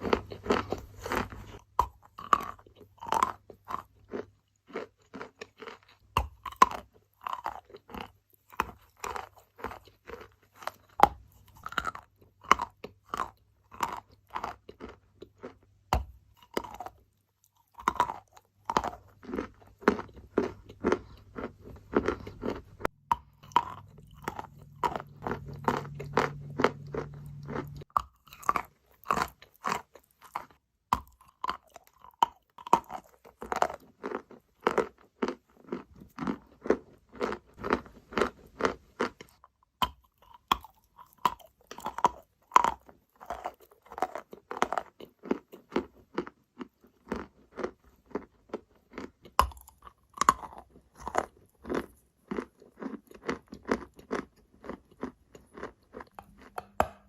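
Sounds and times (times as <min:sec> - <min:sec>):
low steady hum: 0:21.0 - 0:27.9.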